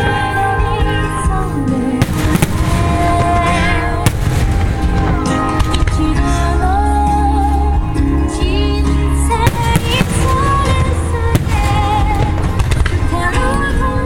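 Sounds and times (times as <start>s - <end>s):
song with singer over speakers: 0.0s - 14.0s
firework shells bursting: 2.0s - 6.0s, 9.5s - 13.2s.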